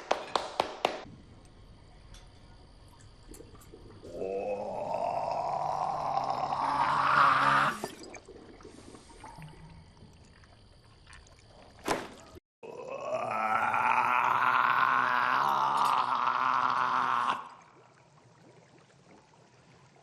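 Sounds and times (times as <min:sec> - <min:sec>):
man belching: 0:04.0 - 0:08.0, 0:12.6 - 0:17.6.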